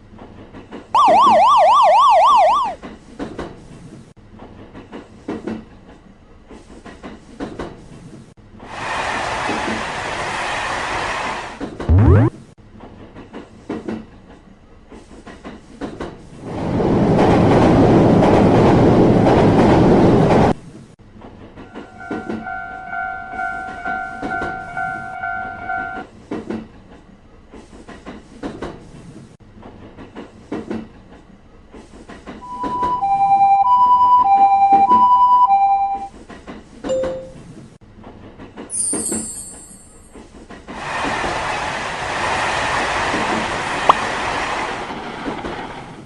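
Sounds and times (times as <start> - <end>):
train rushing past: 8.7 - 11.6, 40.7 - 46.0
two-tone crossing warning bell: 21.8 - 26.0, 38.7 - 40.2.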